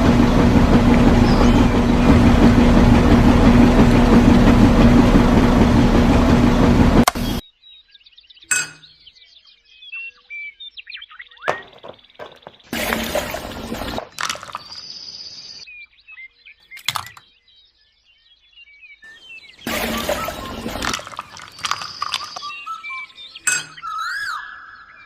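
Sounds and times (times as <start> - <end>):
small birds chirping: 0.0 - 5.2, 7.1 - 25.0
loud noisy bursts and clinks: 0.0 - 7.4, 19.7 - 22.4.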